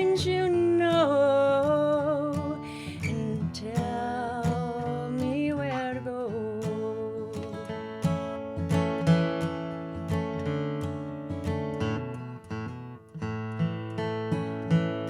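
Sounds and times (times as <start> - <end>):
woman singing: 0.0 - 8.0
strummed acoustic guitar: 0.0 - 15.0.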